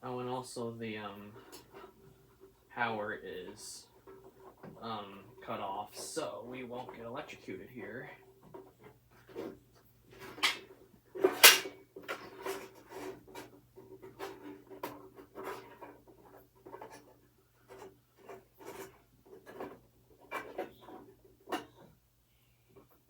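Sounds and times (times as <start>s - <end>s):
scraping and clicks of handled parts: 8.2s - 22.0s.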